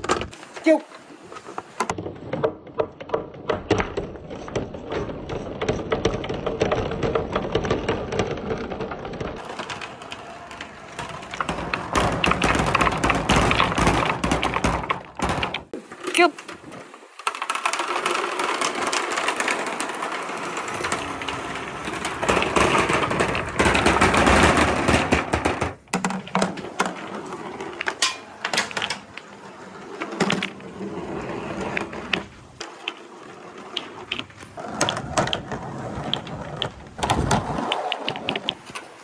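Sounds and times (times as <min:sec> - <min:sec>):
balls rolling down wooden track: 0:00.0 - 0:39.0
rapid clicking of balls: 0:01.4 - 0:39.0.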